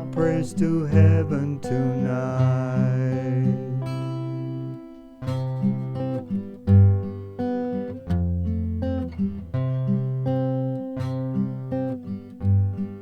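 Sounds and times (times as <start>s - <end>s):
acoustic guitar picking and strumming: 0.0s - 13.0s.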